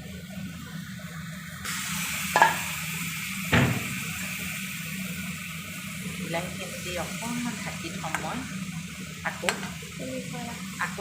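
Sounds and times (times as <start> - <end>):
pan sizzling: 0.0 - 11.0
utensil knocking on pan: 2.4 - 2.6, 9.4 - 9.8.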